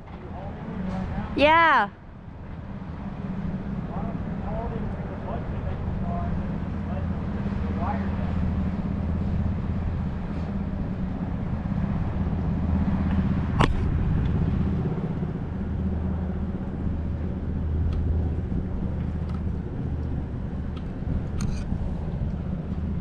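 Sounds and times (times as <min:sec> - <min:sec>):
low mechanical hum: 0:00.0 - 0:23.0
sharp click: 0:13.6 - 0:13.9.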